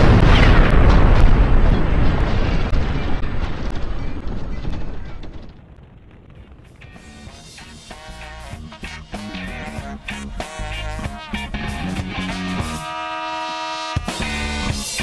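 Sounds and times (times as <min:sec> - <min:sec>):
deep rumbling boom: 0:00.0 - 0:07.8.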